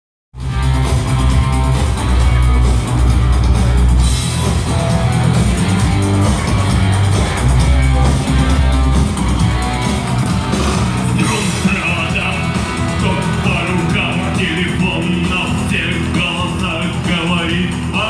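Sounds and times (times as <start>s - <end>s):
drums: 0.3s - 18.0s
guitar: 0.4s - 18.0s
heavy sustained bass notes: 0.4s - 18.0s.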